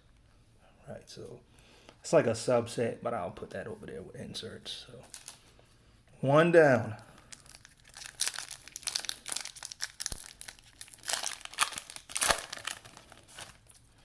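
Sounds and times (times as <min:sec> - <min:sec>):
wrapper ripping: 0:05.0 - 0:05.4, 0:07.3 - 0:13.9
plastic foil wrapper crinkling: 0:05.0 - 0:05.5, 0:07.2 - 0:14.0.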